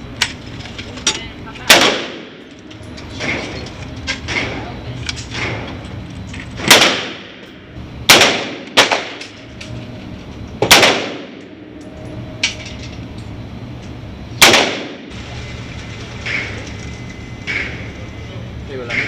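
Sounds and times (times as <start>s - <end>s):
rifle gunshots: 1.7s - 2.4s, 6.6s - 7.4s, 8.1s - 9.2s, 10.6s - 11.4s, 14.4s - 15.2s.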